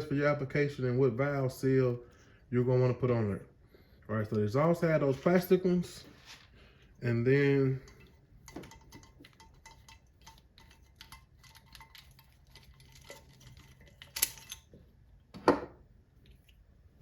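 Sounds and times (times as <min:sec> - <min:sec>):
small metal parts clinking: 0:07.9 - 0:14.7.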